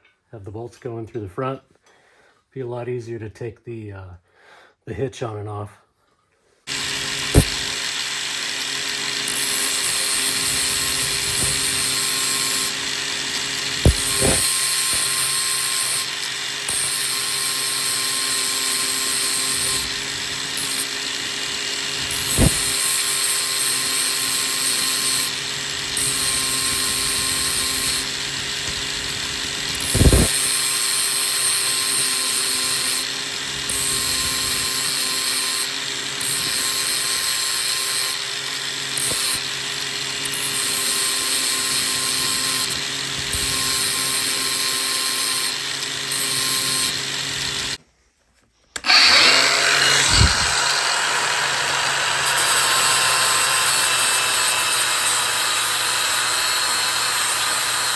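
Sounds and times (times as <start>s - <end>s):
steady machine hum: 6.7s - 30.7s
welding arc sizzling: 6.7s - 47.8s, 48.9s - 57.9s.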